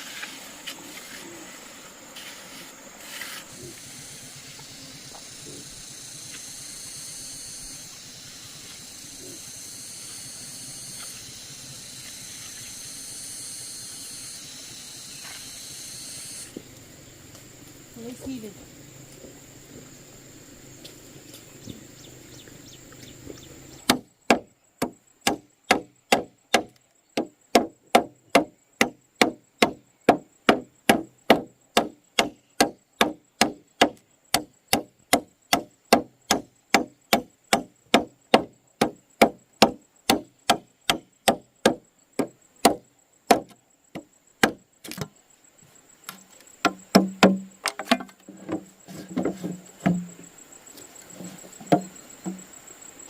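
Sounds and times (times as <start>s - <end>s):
wood being chopped: 23.9s - 45.1s, 46.1s - 50.2s, 51.2s - 52.4s.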